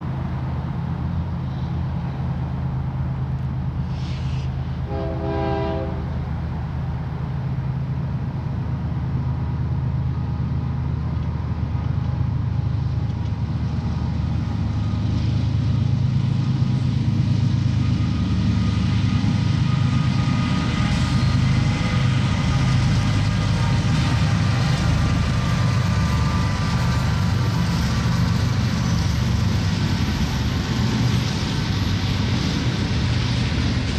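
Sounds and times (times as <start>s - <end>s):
diesel locomotive engine drone: 0.0s - 33.9s
train wheels on rails: 0.0s - 33.9s
train horn blast: 4.0s - 6.2s.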